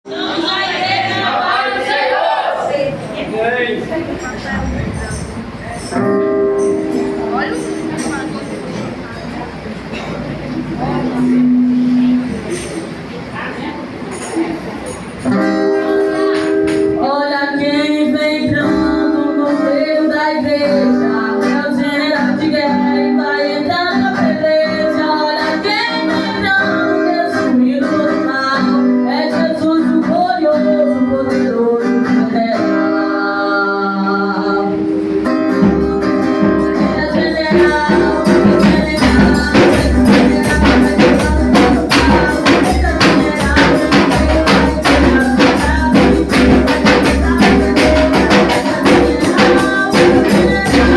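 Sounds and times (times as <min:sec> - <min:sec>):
person singing gospel song: 0:00.0 - 0:03.0, 0:16.9 - 0:50.9
bass and percussion beat: 0:02.8 - 0:09.4, 0:10.2 - 0:13.3, 0:35.4 - 0:50.9
tambourine: 0:04.2 - 0:08.9, 0:12.2 - 0:13.2, 0:36.6 - 0:50.9.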